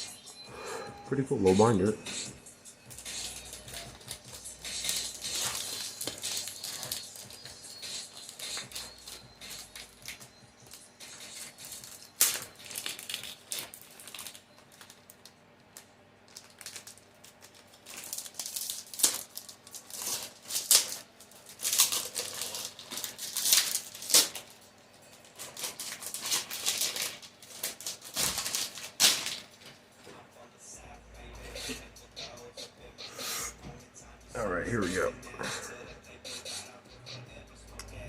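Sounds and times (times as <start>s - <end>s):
plastic packaging crinkling: 3.2s - 29.8s.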